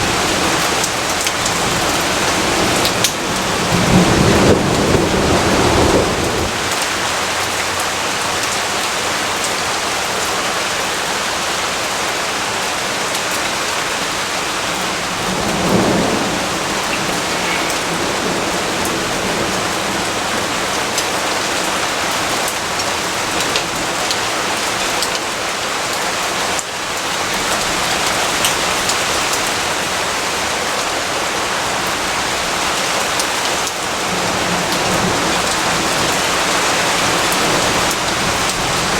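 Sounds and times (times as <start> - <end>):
low rolls of thunder: 0.0 - 6.8, 14.8 - 21.0
steady rain falling: 0.0 - 38.9.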